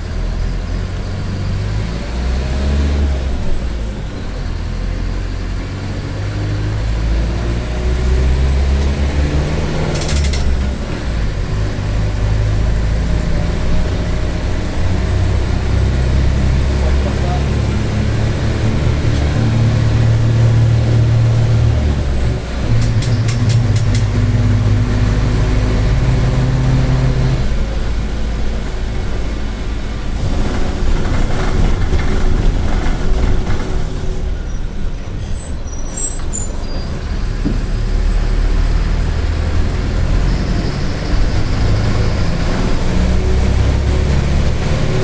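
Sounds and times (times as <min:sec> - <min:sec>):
bus engine droning: 0:00.0 - 0:45.0
brief high squeaks: 0:34.4 - 0:37.1.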